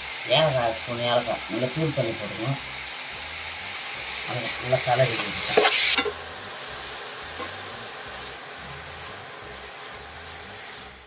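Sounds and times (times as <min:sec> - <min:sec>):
mixture sizzling in a pan: 0:00.0 - 0:11.0
spoon scraping a pan: 0:05.0 - 0:06.2.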